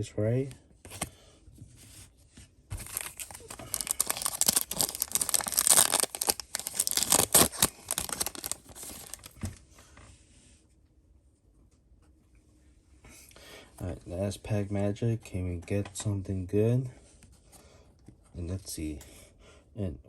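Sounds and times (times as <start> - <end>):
foil wrapper tearing and crinkling: 2.8 - 9.4.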